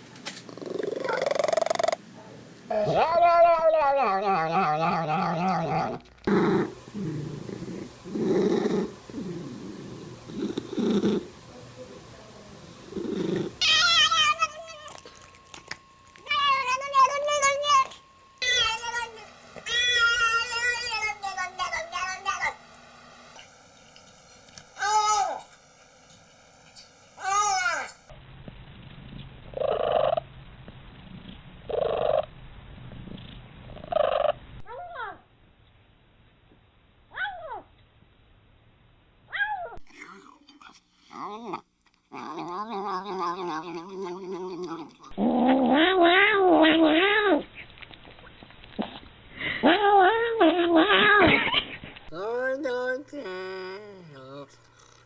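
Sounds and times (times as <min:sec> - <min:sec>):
cat purring: 0:00.5 - 0:02.0, 0:02.7 - 0:27.4, 0:40.0 - 0:45.8
warbling cat call: 0:02.7 - 0:09.6, 0:13.0 - 0:22.6, 0:24.6 - 0:25.7, 0:27.2 - 0:28.1.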